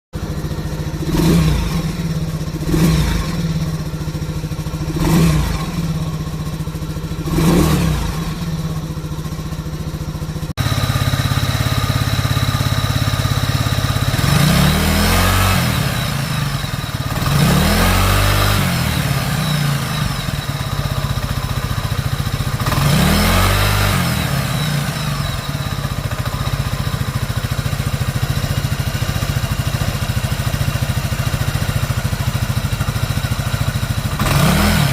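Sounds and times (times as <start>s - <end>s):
scooter engine revving: 0.2s - 34.9s.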